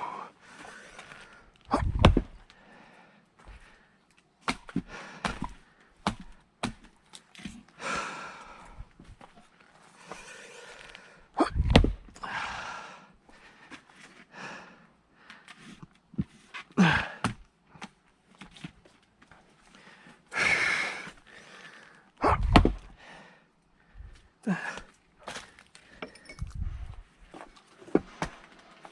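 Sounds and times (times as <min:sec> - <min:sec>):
person breathing heavily: 0:00.0 - 0:04.0, 0:04.7 - 0:06.3, 0:07.7 - 0:09.1, 0:09.8 - 0:15.8, 0:16.8 - 0:17.4, 0:19.6 - 0:28.4
splitting tool striking log: 0:11.5 - 0:12.0, 0:22.3 - 0:22.8.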